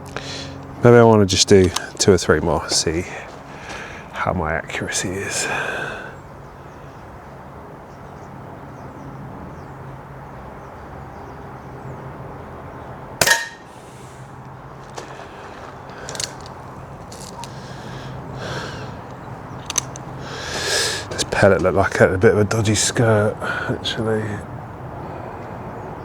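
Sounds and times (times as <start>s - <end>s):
air pistol firing: 13.2s - 13.7s
faint clicks: 14.4s - 21.2s.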